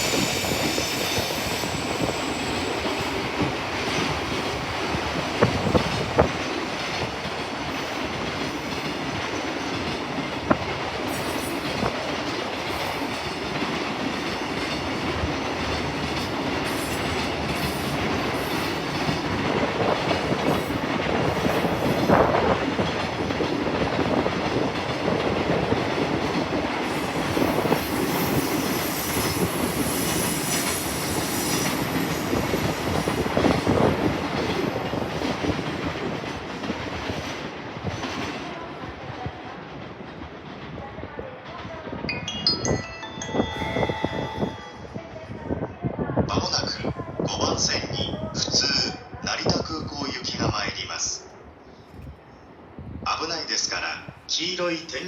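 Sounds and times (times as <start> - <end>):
train wheels rumbling on rail: 0.0 - 42.1.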